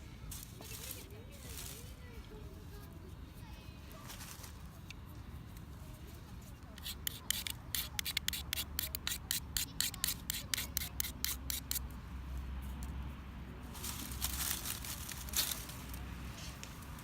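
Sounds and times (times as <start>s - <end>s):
hissing rasp: 6.8s - 11.8s
rhythmic scraping strokes: 6.8s - 11.8s.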